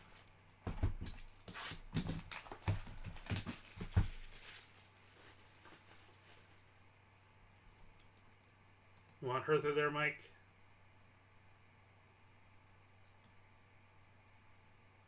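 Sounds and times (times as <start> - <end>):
cards tapping and rustling: 0.6 - 4.8.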